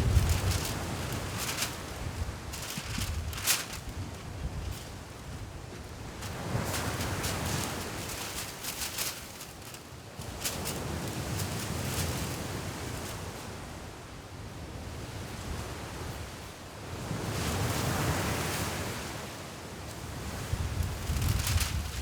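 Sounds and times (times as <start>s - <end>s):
wind buffeting microphone: 0.0s - 12.0s, 20.3s - 22.0s.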